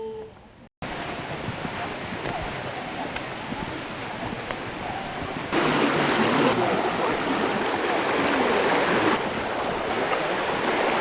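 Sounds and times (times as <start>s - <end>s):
stream water rushing: 0.8s - 11.0s.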